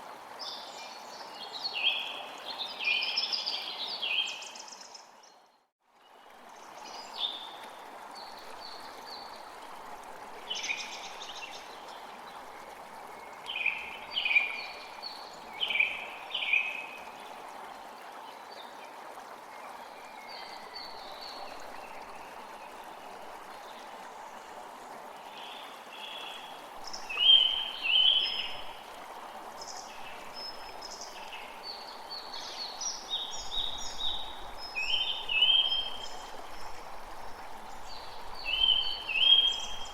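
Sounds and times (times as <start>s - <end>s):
rain hiss: 25.4s - 39.9s.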